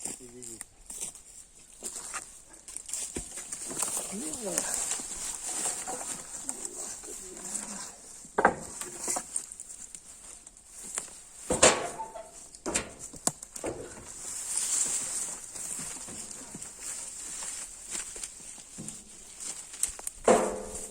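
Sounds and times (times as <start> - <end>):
sharp knocks and clatters: 11.4 - 14.2, 20.1 - 20.9.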